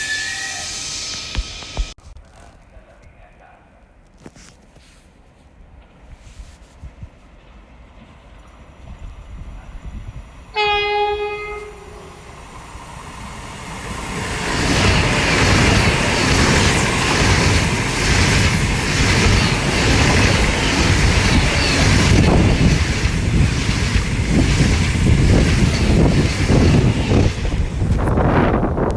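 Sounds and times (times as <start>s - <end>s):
train passing: 7.2s - 28.9s
train horn blast: 10.5s - 12.4s.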